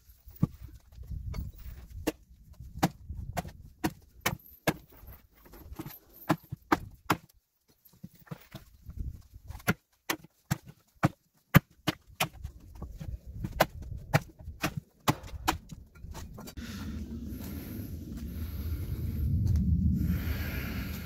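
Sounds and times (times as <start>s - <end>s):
footsteps on frozen ground: 12.4s - 20.0s
low rumbling noise: 15.8s - 21.0s.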